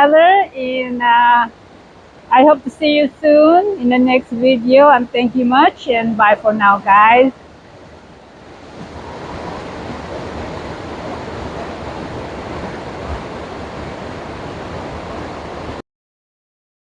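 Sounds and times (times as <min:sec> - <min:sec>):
waterfall rushing: 0:00.9 - 0:15.8.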